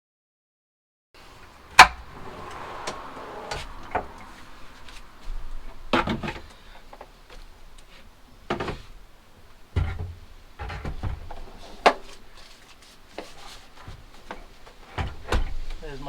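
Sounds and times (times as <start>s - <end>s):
knocks and thumps on wood: 9.7s - 12.1s.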